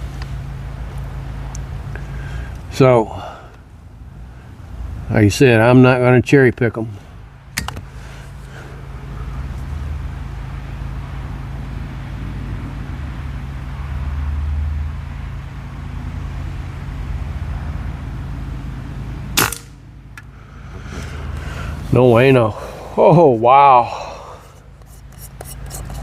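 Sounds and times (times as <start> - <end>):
airgun shot: 19.4 - 19.8.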